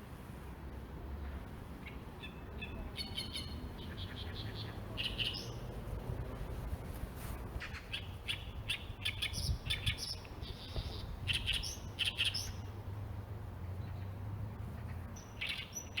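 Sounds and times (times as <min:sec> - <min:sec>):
small birds chirping: 0:01.8 - 0:05.6, 0:07.6 - 0:12.7, 0:15.0 - 0:16.0.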